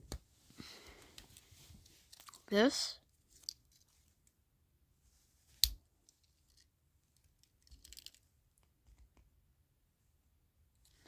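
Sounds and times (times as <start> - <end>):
small clicks and scrapes: 0.8 - 2.5, 5.6 - 9.2.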